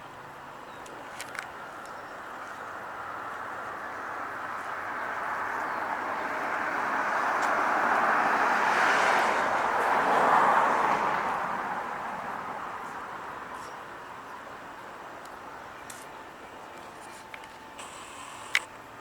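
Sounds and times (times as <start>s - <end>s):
car passing by: 3.0s - 14.2s.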